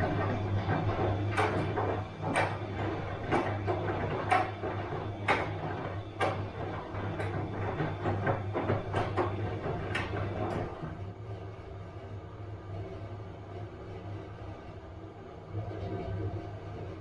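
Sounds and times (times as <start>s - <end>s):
washing machine motor hum: 0.0s - 17.0s.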